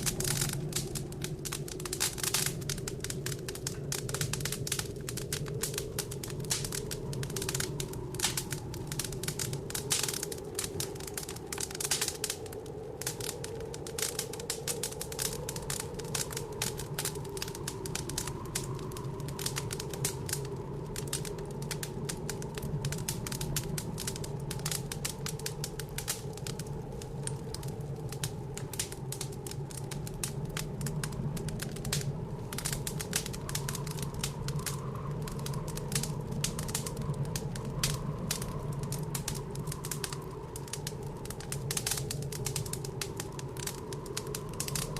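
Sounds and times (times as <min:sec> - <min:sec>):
howling blizzard wind: 0:00.0 - 0:44.9
wood fire crackling: 0:00.0 - 0:44.9.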